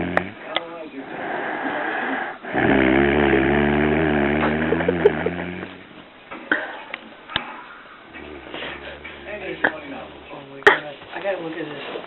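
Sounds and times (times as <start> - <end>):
man snoring: 0.0 - 0.4, 1.1 - 5.8, 8.2 - 9.8.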